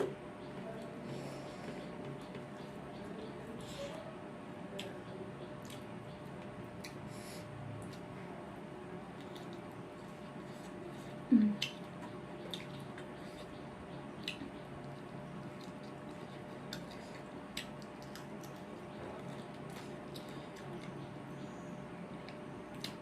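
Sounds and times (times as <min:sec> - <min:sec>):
wet chewing: 0:09.1 - 0:21.0.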